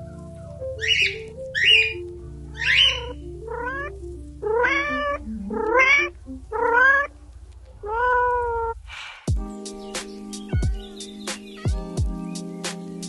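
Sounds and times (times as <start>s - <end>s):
soft background music: 0.0s - 8.4s, 9.3s - 13.0s
kitten meowing: 2.6s - 7.1s, 7.8s - 8.8s.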